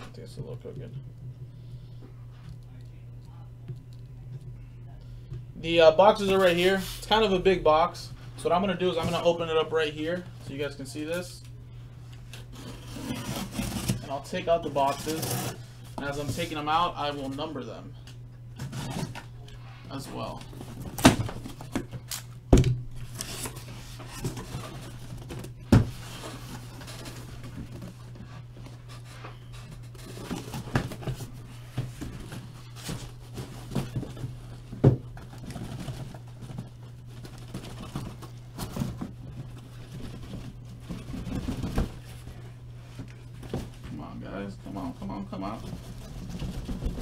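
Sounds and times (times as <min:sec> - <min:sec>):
steady low hum: 0:00.0 - 0:47.0
cardboard boxes rustling and scraping: 0:12.4 - 0:17.4, 0:18.6 - 0:21.9, 0:23.0 - 0:44.0, 0:44.6 - 0:47.0.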